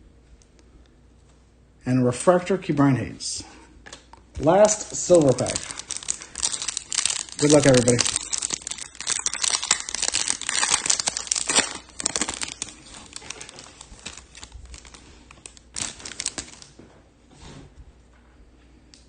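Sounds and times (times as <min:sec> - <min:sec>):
foil wrapper crinkling: 0:04.4 - 0:16.8.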